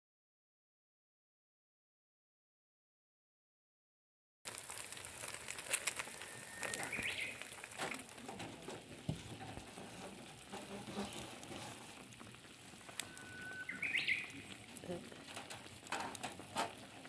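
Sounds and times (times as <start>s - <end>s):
light crackling patter: 4.5s - 17.0s
songbird singing: 6.2s - 7.4s, 12.9s - 14.6s.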